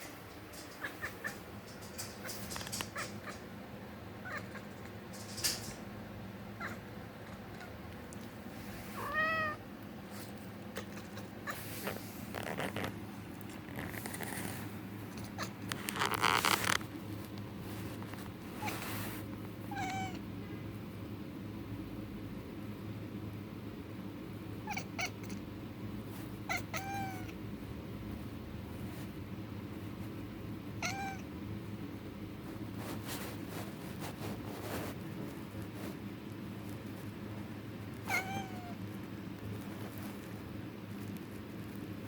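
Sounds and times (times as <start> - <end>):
low steady hum: 0.0 - 42.0
cat chattering chirps and clicks: 0.5 - 3.5, 10.6 - 11.6
cat chirping: 0.6 - 3.5, 4.2 - 4.8, 6.6 - 7.8, 8.9 - 9.6, 26.5 - 27.3, 30.8 - 31.2, 38.1 - 38.8
cat meow: 4.2 - 4.8, 6.6 - 6.9, 9.0 - 9.6, 19.7 - 20.2, 24.6 - 25.4, 26.5 - 27.4, 30.8 - 31.2, 38.1 - 38.8.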